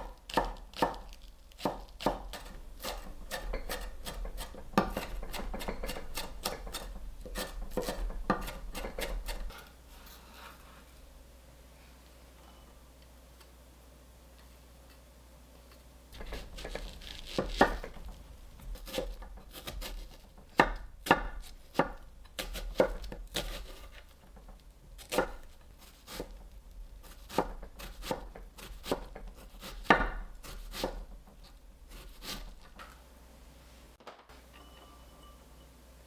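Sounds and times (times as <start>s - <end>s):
knife chopping on cutting board: 0.0s - 9.7s, 16.2s - 32.8s.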